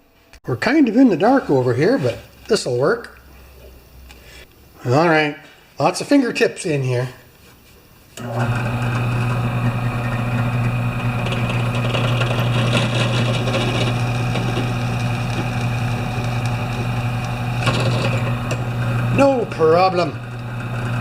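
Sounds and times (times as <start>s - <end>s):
drill press motor hum: 8.2s - 21.0s.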